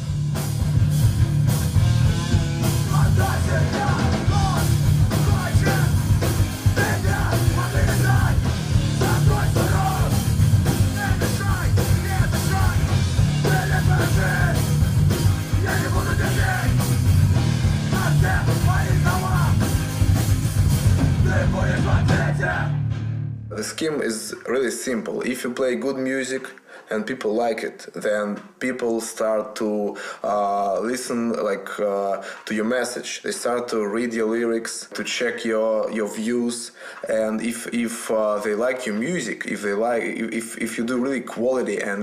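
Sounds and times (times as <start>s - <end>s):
dense drumming: 0.0s - 23.3s
punk rock music: 0.0s - 23.5s
shouted vocals: 2.8s - 17.0s, 17.8s - 19.6s, 21.0s - 22.8s.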